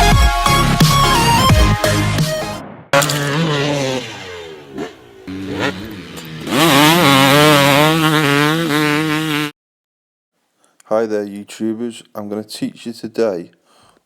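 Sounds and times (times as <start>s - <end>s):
dirt bike engine revving: 3.0s - 9.5s.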